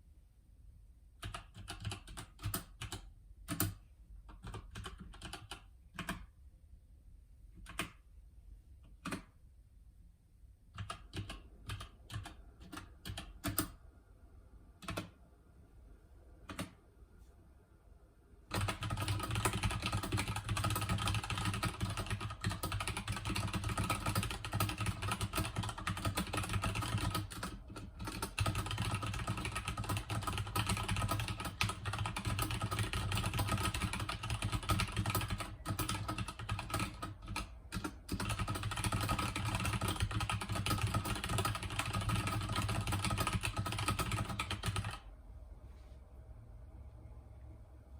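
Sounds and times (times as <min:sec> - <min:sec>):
mechanical keyboard typing: 0:01.2 - 0:06.3, 0:07.6 - 0:08.0, 0:08.9 - 0:09.3, 0:10.8 - 0:13.8, 0:14.8 - 0:15.2, 0:16.5 - 0:16.8, 0:18.5 - 0:45.1
steady low hum: 0:02.6 - 0:47.9.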